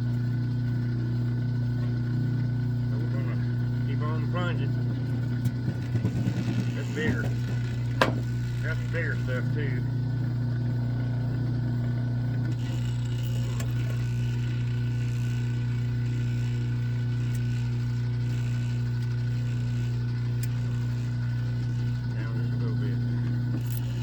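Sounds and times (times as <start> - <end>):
wire-stripping machine humming: 0.0 - 24.0.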